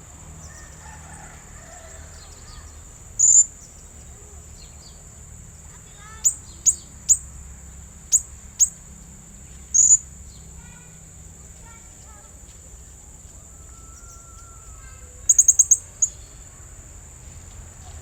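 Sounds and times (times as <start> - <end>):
parrot calling shrill notes: 13.6 - 16.1.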